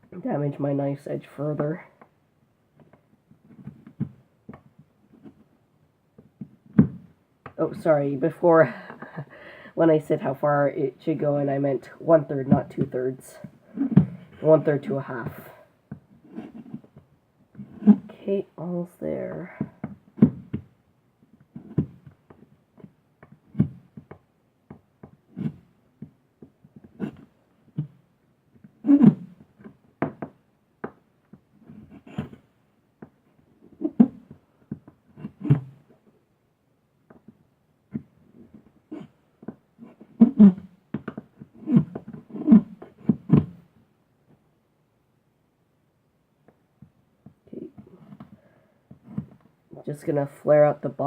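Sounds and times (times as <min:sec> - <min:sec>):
knife carving wood: 0:02.8 - 0:05.5, 0:12.5 - 0:18.2, 0:19.4 - 0:36.0, 0:37.1 - 0:43.7, 0:47.7 - 0:49.5
knife cutting wood: 0:16.2 - 0:17.0, 0:17.6 - 0:18.1.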